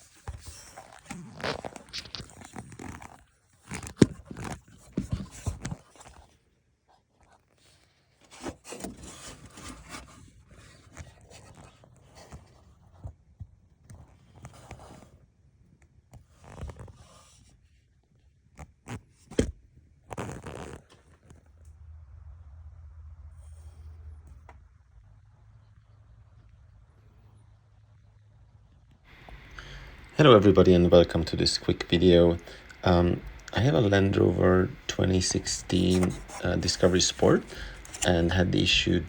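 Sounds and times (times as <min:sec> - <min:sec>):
things being handled: 0:00.3 - 0:05.8, 0:29.1 - 0:39.0.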